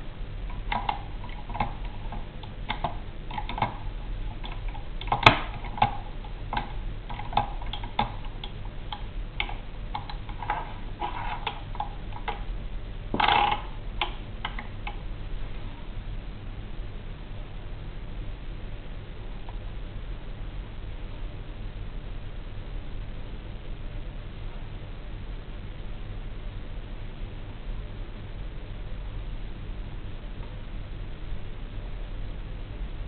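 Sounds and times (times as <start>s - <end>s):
typewriter rattle: 0.5s - 8.6s, 9.4s - 12.5s, 13.2s - 13.8s
typewriter clicks: 4.4s - 12.4s.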